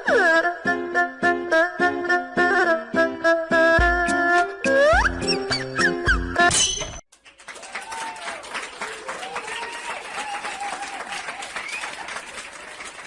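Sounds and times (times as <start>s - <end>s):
audience applauding: 7.1s - 13.0s.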